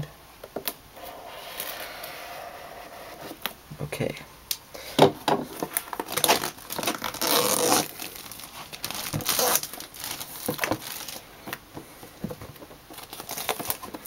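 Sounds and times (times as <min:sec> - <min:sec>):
plastic rustling and small clicks: 0:05.5 - 0:14.0
plastic shrink-wrap crinkling and tearing: 0:05.6 - 0:11.3, 0:12.9 - 0:14.0.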